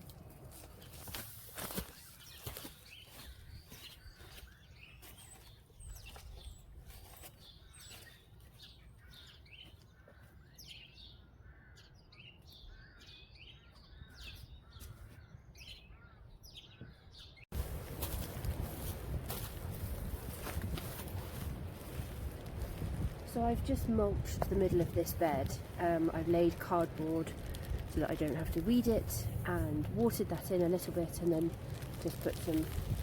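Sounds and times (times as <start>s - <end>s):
small birds chirping: 0.1s - 18.3s
steady rumbling noise: 17.6s - 33.0s.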